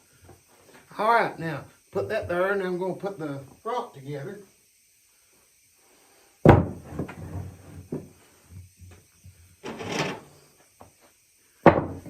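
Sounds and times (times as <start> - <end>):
rustling scrape: 9.6 - 10.5.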